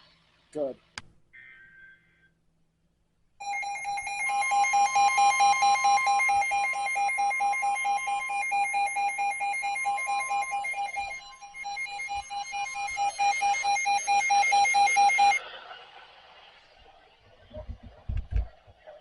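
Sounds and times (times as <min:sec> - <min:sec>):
rapid pulsing electronic beep: 0:03.4 - 0:15.4.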